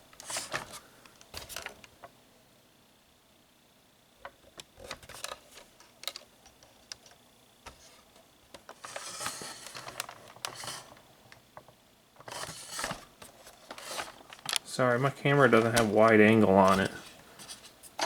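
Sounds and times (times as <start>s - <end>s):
rustling: 12.2s - 18.0s.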